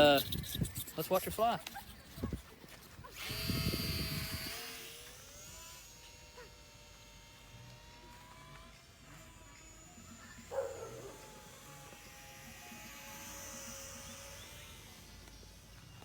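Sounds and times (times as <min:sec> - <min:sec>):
model airplane motor whining: 0:00.0 - 0:16.0.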